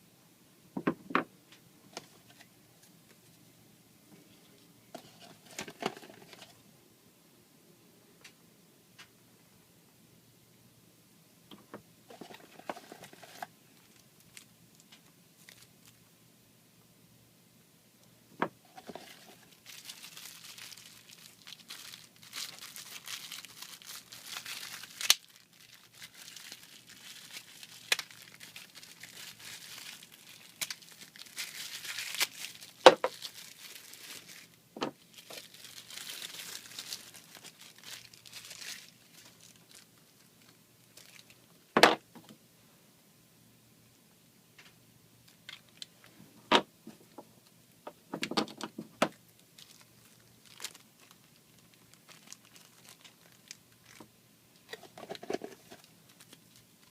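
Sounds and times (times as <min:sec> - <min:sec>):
plastic packaging crinkling: 0:05.0 - 0:06.6, 0:12.1 - 0:16.0, 0:18.7 - 0:41.4, 0:48.3 - 0:56.9.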